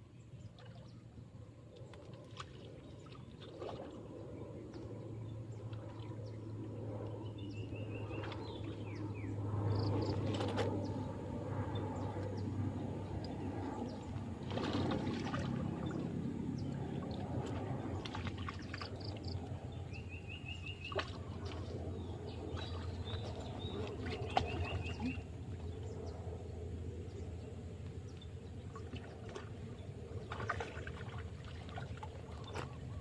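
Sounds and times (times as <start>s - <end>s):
faint water sounds: 0.0s - 33.0s
steady low rush: 4.0s - 28.8s.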